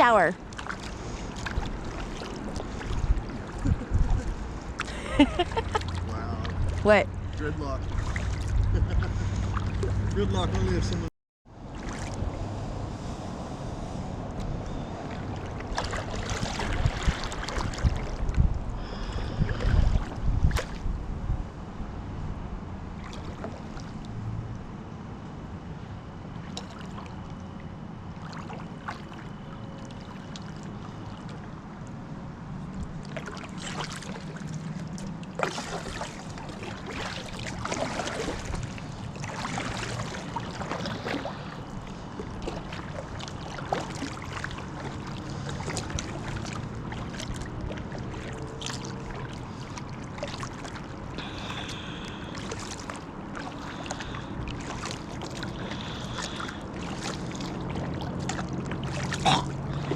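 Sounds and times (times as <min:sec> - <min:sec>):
steady low rumble: 0:00.0 - 0:59.9
paddle splashing in water: 0:00.4 - 0:10.3, 0:11.6 - 0:12.7, 0:14.4 - 0:20.9, 0:23.0 - 0:24.2, 0:26.4 - 0:27.5, 0:28.1 - 0:31.5, 0:32.8 - 0:59.9
sharp splashes and knocks: 0:00.4 - 0:10.3, 0:11.7 - 0:12.4, 0:14.4 - 0:21.0, 0:23.0 - 0:24.2, 0:26.4 - 0:27.5, 0:28.2 - 0:31.4, 0:32.8 - 0:59.9.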